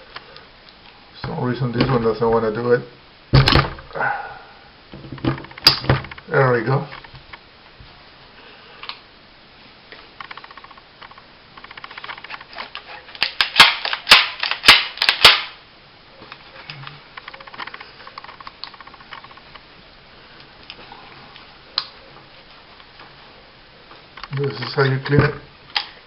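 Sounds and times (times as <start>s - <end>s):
pistol mechanism clicking: 13.2s - 15.6s.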